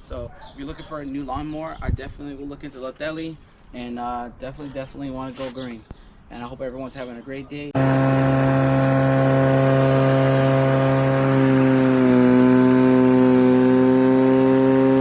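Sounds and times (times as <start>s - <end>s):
electric lawn mower running: 7.8s - 15.0s.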